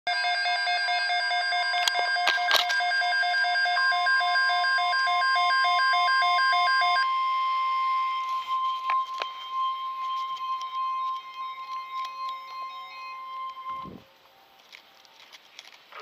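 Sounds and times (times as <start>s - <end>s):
alternating electronic beeping: 0.1s - 14.1s.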